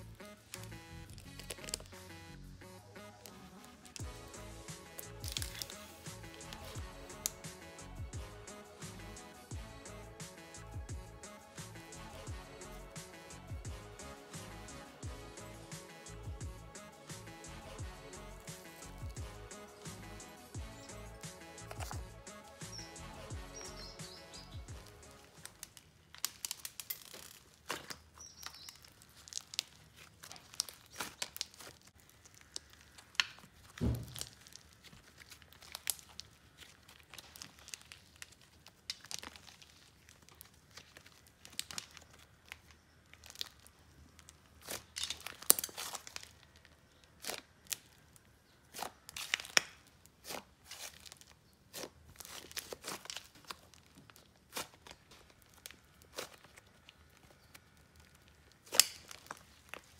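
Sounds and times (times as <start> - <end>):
slime squished by hand: 4.9 - 7.4, 25.3 - 59.9
dull thump: 33.8 - 34.2.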